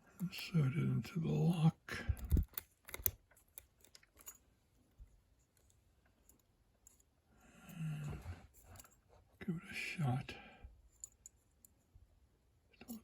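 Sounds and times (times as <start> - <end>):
faint handling noise: 2.0 - 9.4
lock pick metallic clicks: 2.2 - 4.4.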